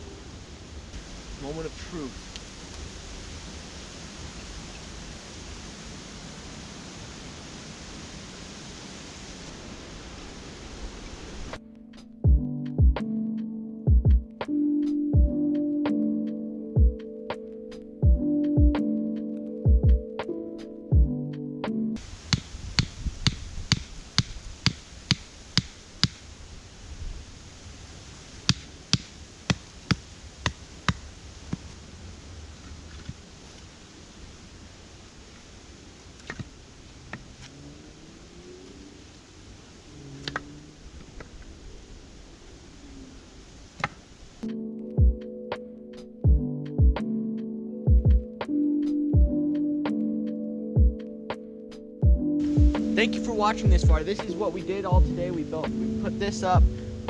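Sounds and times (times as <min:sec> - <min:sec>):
wind on microphone: 0:22.0 - 0:24.6
wind noise: 0:22.0 - 0:27.6.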